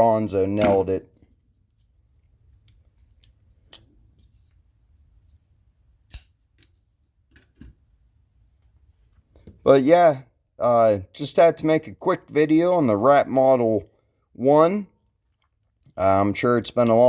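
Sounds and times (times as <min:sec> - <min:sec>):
handling sounds: 0:00.4 - 0:05.4.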